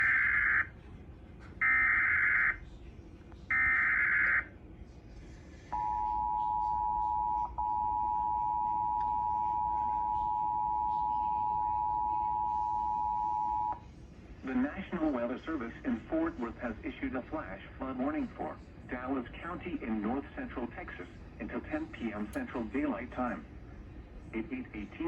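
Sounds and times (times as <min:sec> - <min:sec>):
two-tone attention signal: 0:05.8 - 0:13.8.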